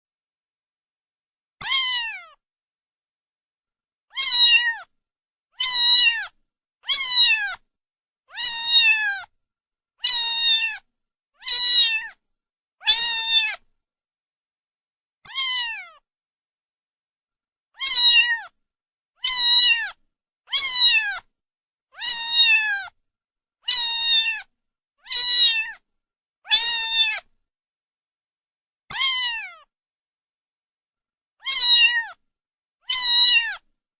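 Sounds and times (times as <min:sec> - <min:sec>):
cat meowing: 0:01.6 - 0:02.4, 0:04.1 - 0:04.9, 0:05.6 - 0:07.6, 0:08.3 - 0:09.3, 0:10.0 - 0:12.2, 0:12.8 - 0:13.6, 0:15.2 - 0:16.1, 0:17.8 - 0:18.6, 0:19.2 - 0:21.3, 0:22.0 - 0:23.0, 0:23.6 - 0:25.8, 0:26.5 - 0:27.3, 0:28.9 - 0:29.7, 0:31.4 - 0:32.2, 0:32.8 - 0:33.7.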